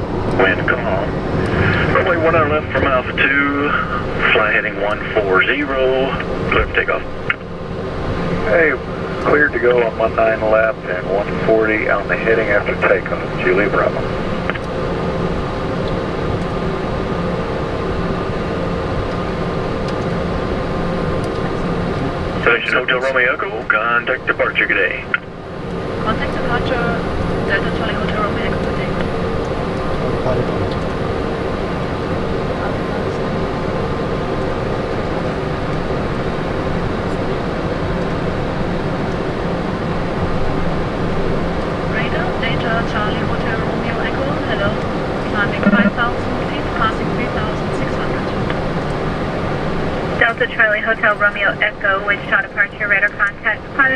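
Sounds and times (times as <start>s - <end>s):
rushing airflow: 0.0s - 4.4s
jet engines roaring in cockpit: 0.0s - 53.9s.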